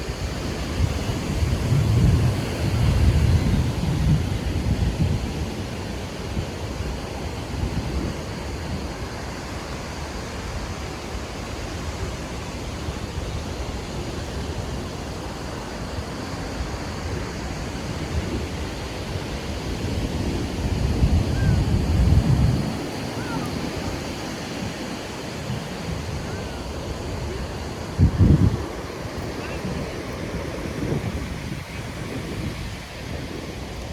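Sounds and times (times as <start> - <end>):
wind buffeting microphone: 0.0 - 9.0, 16.4 - 33.9
surf washing on beach: 0.0 - 33.9.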